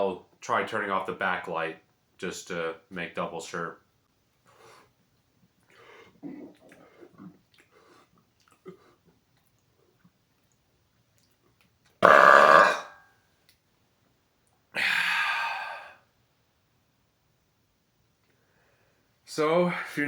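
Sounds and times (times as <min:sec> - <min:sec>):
man burping loudly: 0:12.0 - 0:13.0.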